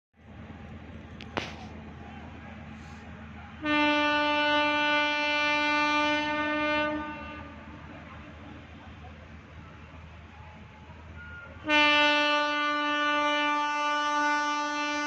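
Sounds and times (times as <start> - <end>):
train horn blast: 3.6 - 7.7, 11.2 - 15.0.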